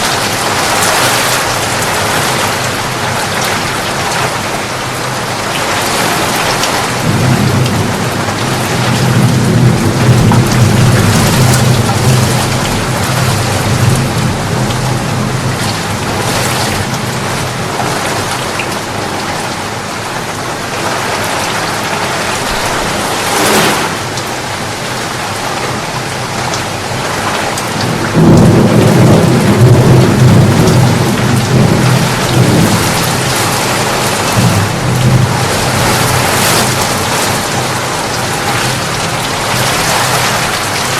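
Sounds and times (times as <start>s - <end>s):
thunder rumbling: 0.0s - 18.5s, 20.1s - 40.9s
heavy rain: 0.0s - 40.9s.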